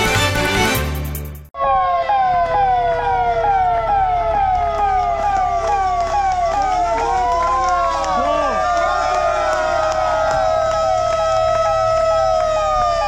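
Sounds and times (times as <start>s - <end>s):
music: 0.0s - 1.5s
siren rapid rising sweeps: 1.6s - 13.0s
siren slowly falling wail: 1.6s - 13.0s.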